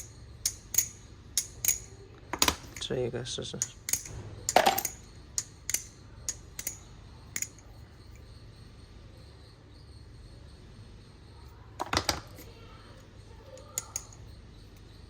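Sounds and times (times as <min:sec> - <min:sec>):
knife handles clicking metallically: 0:00.0 - 0:02.9, 0:03.5 - 0:08.2, 0:12.1 - 0:14.9.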